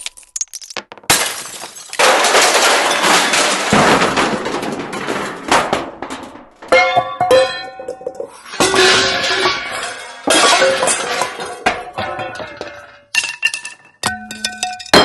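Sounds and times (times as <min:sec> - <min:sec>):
glass breaking and debris tumbling: 0:00.0 - 0:15.0
metallic clangs ringing: 0:06.7 - 0:13.1.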